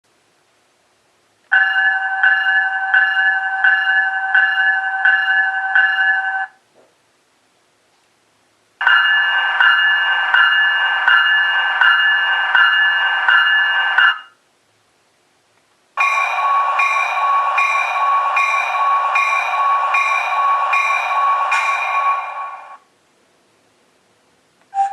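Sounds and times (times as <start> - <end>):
electronic locomotive bell ringing: 1.5 - 6.6, 8.8 - 14.4, 16.0 - 22.8.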